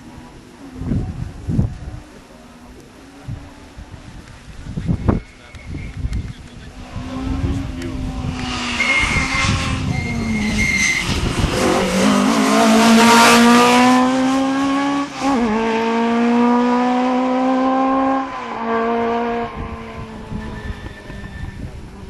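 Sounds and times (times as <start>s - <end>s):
rally car engine accelerating: 5.8s - 22.0s.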